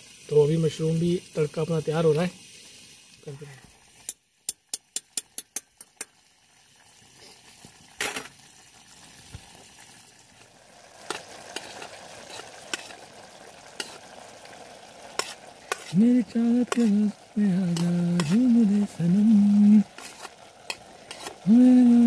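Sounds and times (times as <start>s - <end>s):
food sizzling in a pan: 0.0s - 22.0s
spoon scraping pan: 11.0s - 13.1s, 13.7s - 14.3s, 15.0s - 19.0s, 19.8s - 21.5s
spoon stirring and clinking: 16.7s - 16.9s.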